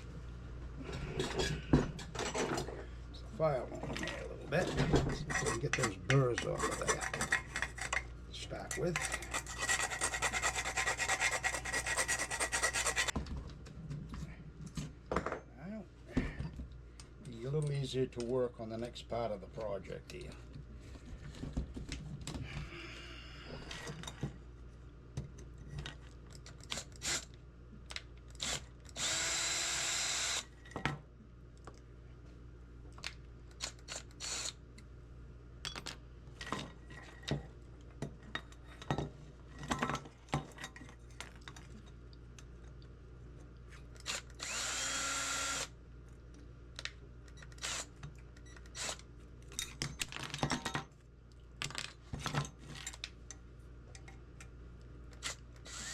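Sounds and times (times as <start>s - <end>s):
cordless drill spinning: 9.7s - 13.1s, 27.0s - 27.2s, 28.4s - 30.5s, 33.6s - 34.6s, 44.0s - 45.7s, 47.6s - 47.9s, 48.7s - 49.0s, 55.2s - 55.9s.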